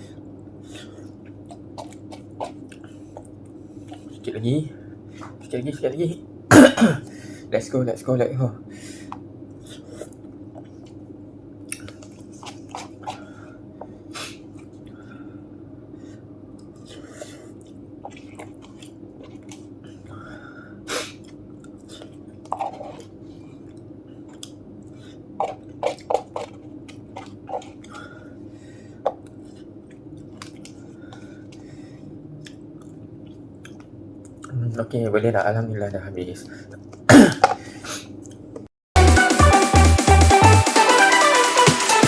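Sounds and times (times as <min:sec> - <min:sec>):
low background hum: 0:00.0 - 0:38.7
person chewing noodles: 0:00.7 - 0:04.2, 0:11.6 - 0:15.3, 0:16.2 - 0:20.4, 0:21.0 - 0:34.6
mouth smacks and clicks: 0:01.0 - 0:04.1, 0:32.4 - 0:34.6.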